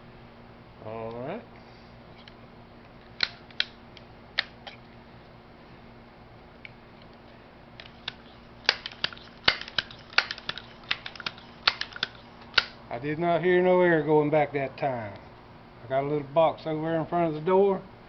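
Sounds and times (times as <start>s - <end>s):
air pistol clicks and clacks: 3.1s - 4.8s, 7.8s - 12.8s.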